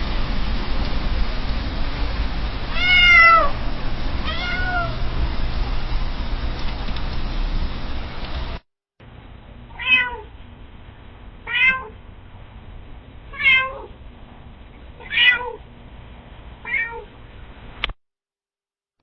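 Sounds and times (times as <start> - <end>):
cat meowing: 2.7 - 3.6, 4.2 - 5.0, 9.7 - 10.3, 11.4 - 12.0, 13.3 - 13.9, 15.0 - 15.6, 16.6 - 17.1.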